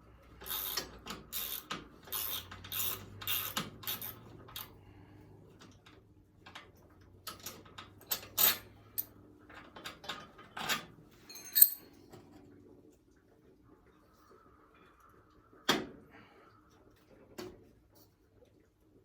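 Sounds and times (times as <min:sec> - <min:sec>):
hand tools clinking and clattering: 0:11.2 - 0:12.0
ringing metallic clink: 0:11.3 - 0:11.9.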